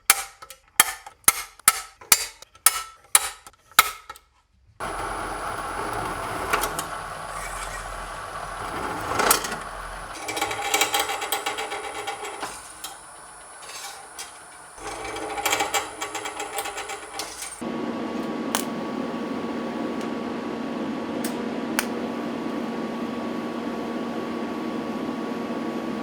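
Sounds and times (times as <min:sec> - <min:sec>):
small power tool running: 0:04.8 - 0:20.1.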